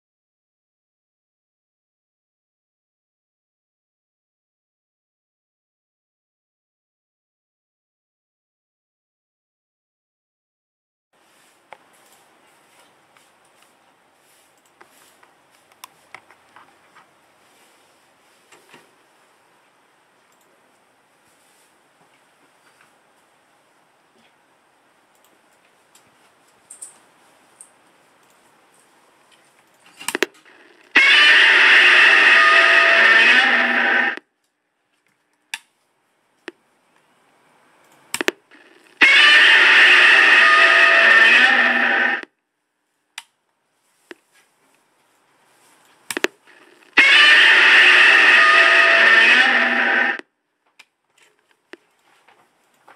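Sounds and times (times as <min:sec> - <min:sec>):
small sharp clicks: 0:37.8 - 0:42.3, 0:46.1 - 0:49.5.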